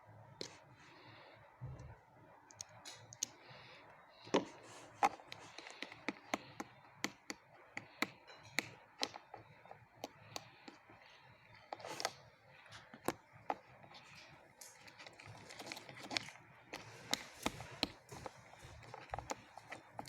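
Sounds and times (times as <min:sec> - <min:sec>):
slime clicking and tapping: 0:04.3 - 0:12.1.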